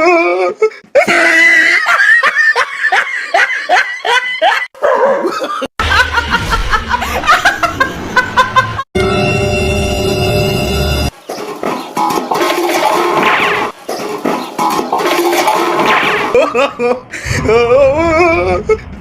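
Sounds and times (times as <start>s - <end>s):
person laughing hard: 0.0s - 8.8s, 16.3s - 18.8s.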